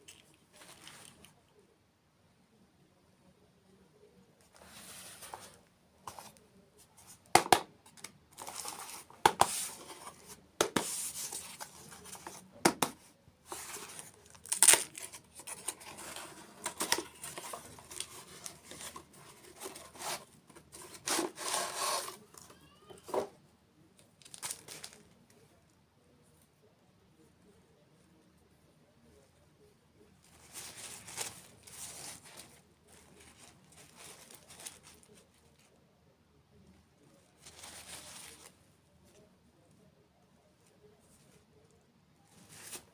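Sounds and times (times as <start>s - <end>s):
crinkling and tearing: 13.5s - 22.3s, 24.0s - 25.2s, 30.3s - 35.7s.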